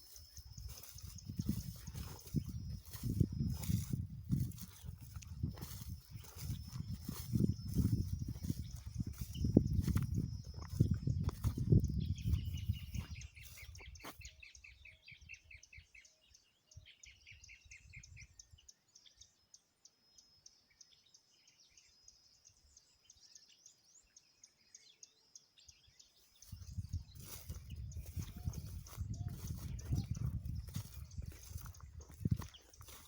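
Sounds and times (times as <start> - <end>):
birds chirping: 0.0 - 15.7, 25.7 - 33.0.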